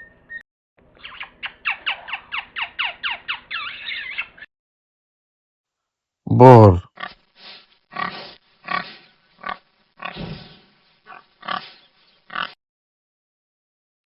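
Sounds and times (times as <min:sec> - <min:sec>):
wild boar calling: 0:07.9 - 0:10.3, 0:11.1 - 0:12.6.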